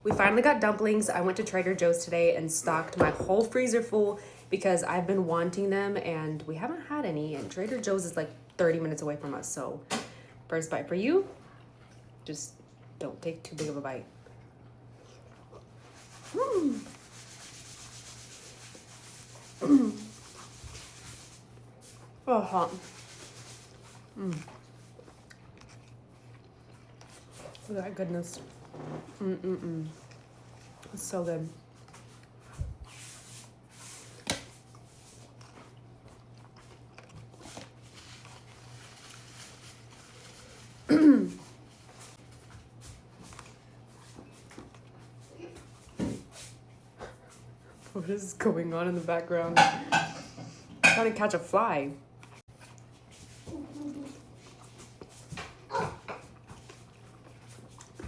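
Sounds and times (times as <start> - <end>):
person making muffled vocal sounds: 19.6 - 20.1, 29.2 - 30.0
chewing and mouth clicks: 23.7 - 27.7, 34.7 - 38.7, 52.2 - 53.0, 56.2 - 58.0.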